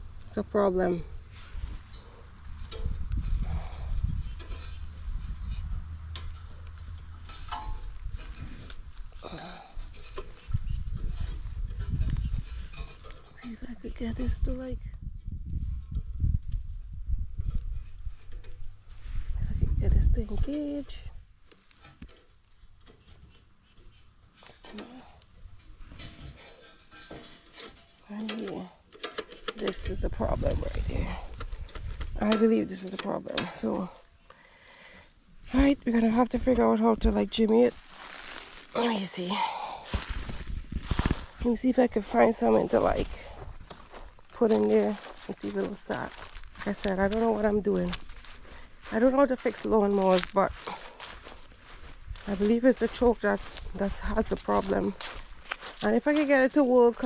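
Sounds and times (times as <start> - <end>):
low rumbling: 0.0 - 18.1
crickets chirring: 0.0 - 57.0
faint clicks of mower parts: 1.3 - 13.7, 17.5 - 19.1, 20.4 - 35.1
clicks and knocks of handling: 26.0 - 30.0.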